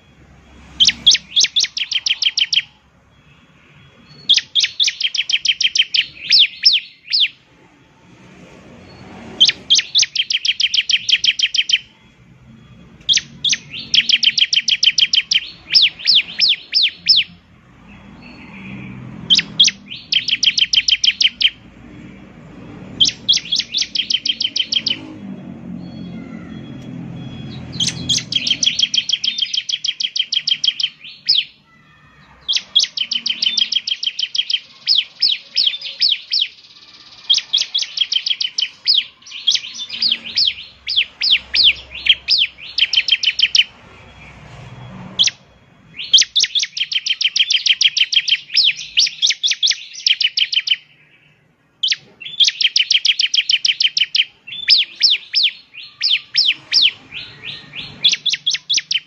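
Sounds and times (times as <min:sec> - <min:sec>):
bird singing high sharp notes: 0:00.0 - 0:07.5, 0:08.1 - 0:59.0.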